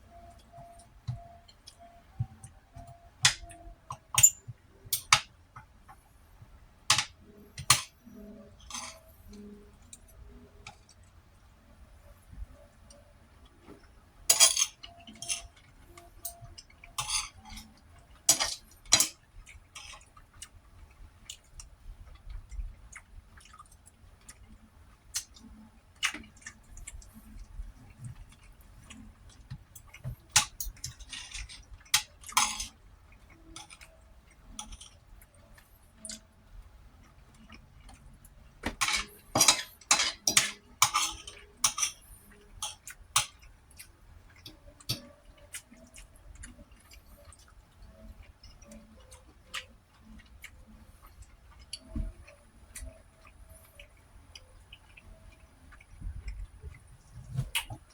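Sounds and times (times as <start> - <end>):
cutlery clinking on dishes: 0.2 - 5.3, 6.9 - 9.4, 14.3 - 20.1, 29.5 - 32.8, 34.6 - 35.0, 38.6 - 43.5.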